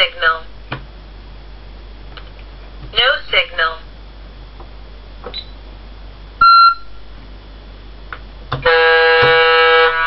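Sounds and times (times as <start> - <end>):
short electronic beep: 6.4 - 7.0
buzzy horn blast: 8.6 - 10.0.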